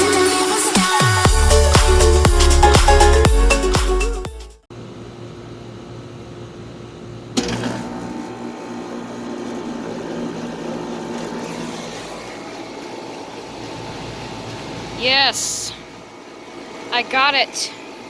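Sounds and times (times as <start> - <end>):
air conditioner compressor hum: 4.7 - 18.0.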